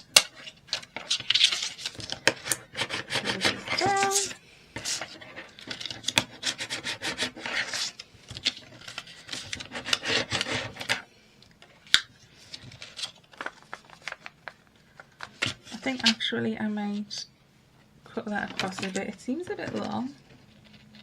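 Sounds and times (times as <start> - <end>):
paper envelope being folded: 12.4 - 16.0.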